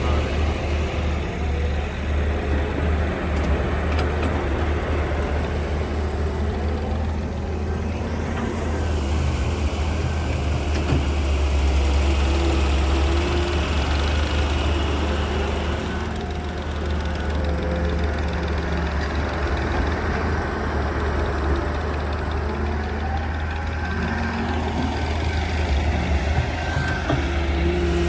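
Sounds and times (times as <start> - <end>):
diesel engine droning: 0.0 - 28.0.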